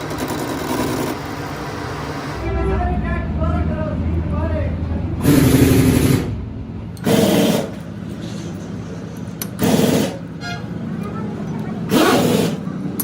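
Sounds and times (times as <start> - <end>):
power tool bursts: 7.0 - 7.8, 9.6 - 10.3, 11.9 - 12.7.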